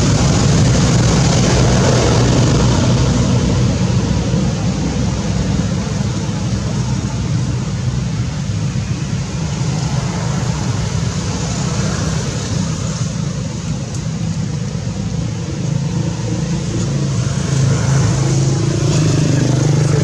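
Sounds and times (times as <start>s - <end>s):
road traffic rumble: 0.0s - 20.0s
vehicle engines running close: 0.0s - 20.0s.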